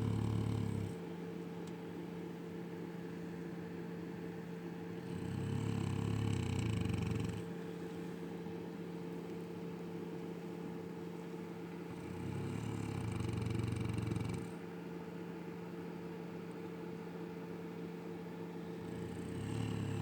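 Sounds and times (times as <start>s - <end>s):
dog snoring: 0.0s - 1.0s, 5.0s - 7.5s, 11.9s - 14.6s, 18.8s - 20.0s
steady low hum: 0.0s - 20.0s.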